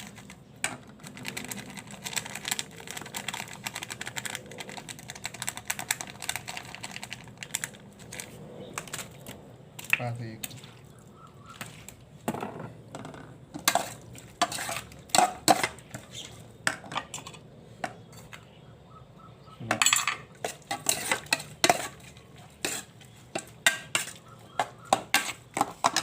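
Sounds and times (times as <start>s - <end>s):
spoon clinking and scraping bowl: 13.6s - 16.4s, 19.7s - 26.0s.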